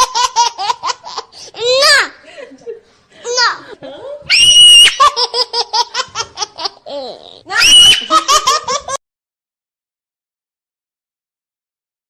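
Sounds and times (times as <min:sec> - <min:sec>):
young child laughing: 0:04.4 - 0:09.0.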